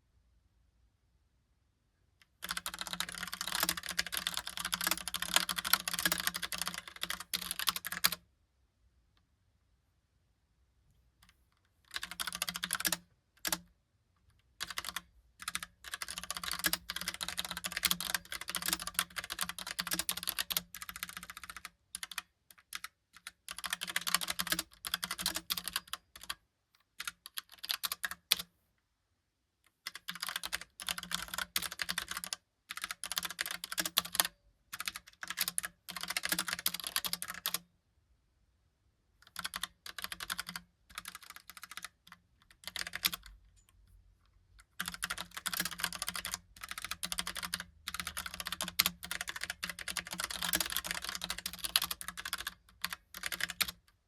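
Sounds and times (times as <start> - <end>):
mechanical keyboard typing: 2.4 - 8.2, 11.9 - 13.6, 14.6 - 26.4, 27.0 - 28.5, 29.9 - 37.6, 39.2 - 43.4, 44.6 - 53.8.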